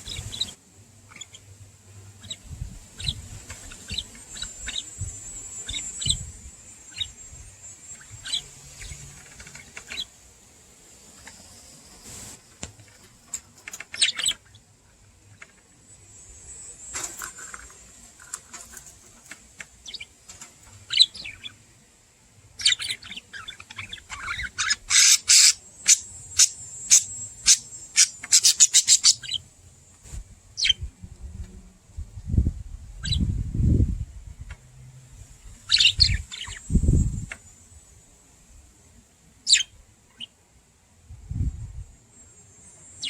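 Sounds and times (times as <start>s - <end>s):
budgerigars chirping: 0.0s - 1.5s, 2.2s - 2.4s, 3.0s - 7.2s, 7.8s - 10.1s, 13.9s - 14.6s, 19.8s - 20.1s, 20.8s - 21.6s, 22.6s - 29.5s, 35.7s - 36.7s, 39.5s - 40.3s.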